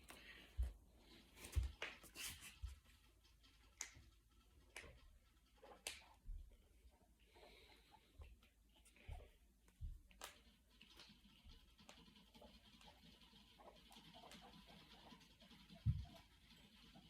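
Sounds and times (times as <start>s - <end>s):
knuckles cracking: 5.8s - 6.2s.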